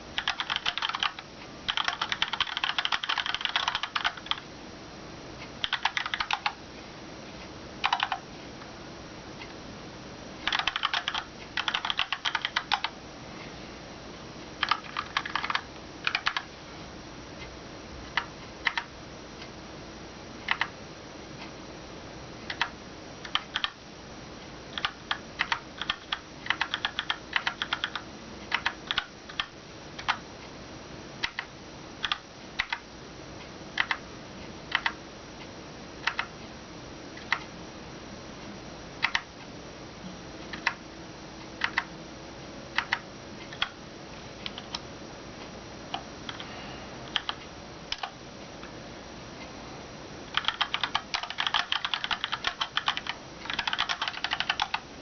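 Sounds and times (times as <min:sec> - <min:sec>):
mechanical keyboard typing: 0:00.2 - 0:04.4, 0:05.6 - 0:06.6, 0:07.8 - 0:08.2, 0:10.4 - 0:12.9, 0:14.6 - 0:16.5, 0:18.1 - 0:18.9, 0:20.5 - 0:20.7, 0:22.5 - 0:23.8, 0:24.7 - 0:30.2, 0:31.2 - 0:32.8, 0:33.8 - 0:34.0, 0:34.7 - 0:35.0, 0:36.0 - 0:36.3, 0:39.0 - 0:39.3, 0:40.5 - 0:40.8, 0:41.6 - 0:41.9, 0:42.8 - 0:43.8, 0:47.1 - 0:48.2, 0:50.3 - 0:54.8.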